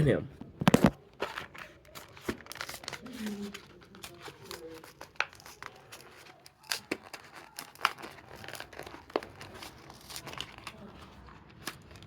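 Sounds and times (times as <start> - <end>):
crinkling plastic: 0.4 - 12.0
card tearing: 0.7 - 12.0
sharp crackles and snaps: 4.0 - 12.0.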